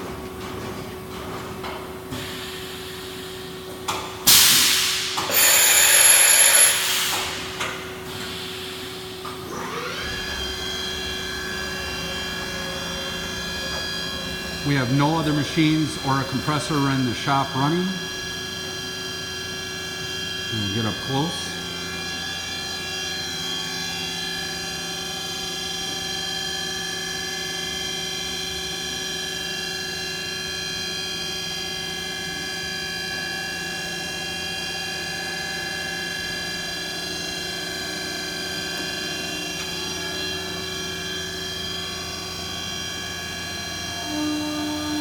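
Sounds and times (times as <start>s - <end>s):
machine whine: 5.1s - 45.0s.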